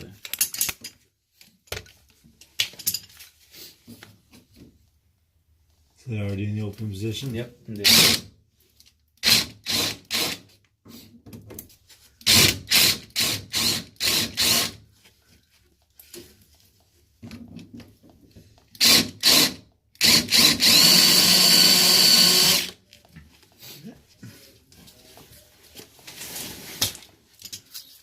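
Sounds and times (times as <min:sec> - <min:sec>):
power drill bursts: 0:07.8 - 0:08.2, 0:09.2 - 0:10.4, 0:12.2 - 0:14.8, 0:18.8 - 0:22.8.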